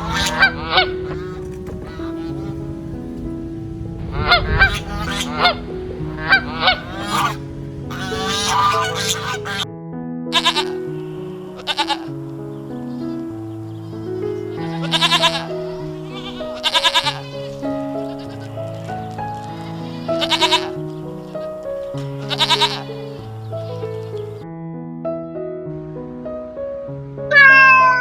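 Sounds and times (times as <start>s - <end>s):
goat bleating: 0.0s - 0.5s, 14.9s - 15.5s
background music: 0.0s - 28.0s.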